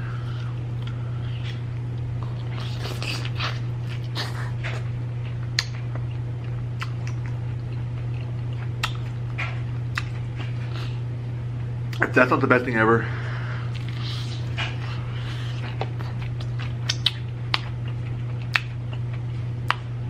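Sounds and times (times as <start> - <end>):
low hum: 0.0 - 20.0
man chewing crunchy food: 0.1 - 11.0, 13.6 - 20.0
wet mouth clicks: 8.8 - 9.0, 15.8 - 17.6.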